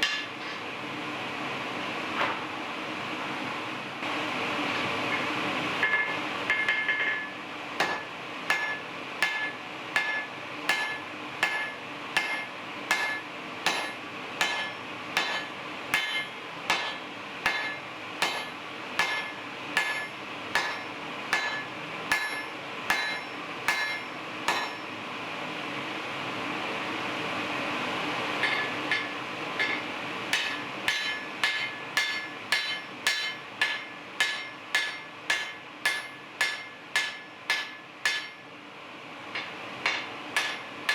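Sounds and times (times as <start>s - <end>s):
hammer striking steel on anvil: 0.0s - 0.6s, 5.8s - 25.0s, 28.4s - 38.5s, 39.3s - 40.9s.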